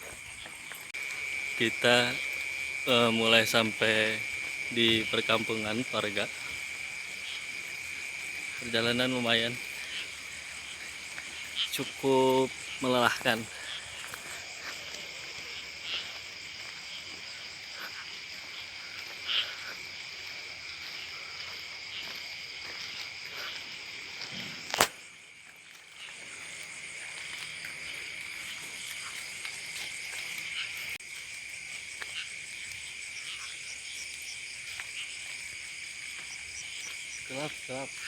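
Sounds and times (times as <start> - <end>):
crickets chirping: 0.0 - 38.0
frogs calling: 0.0 - 38.0
insects shrilling: 0.0 - 38.0
sharp click: 24.7 - 25.0.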